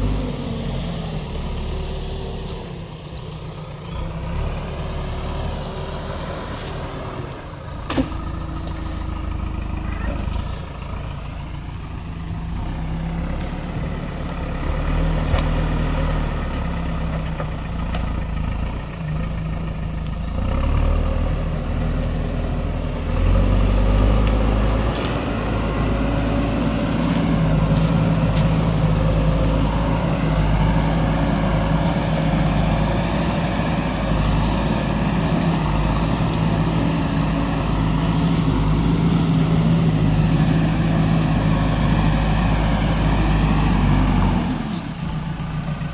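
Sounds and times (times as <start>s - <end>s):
diesel engine running: 0.0s - 45.9s.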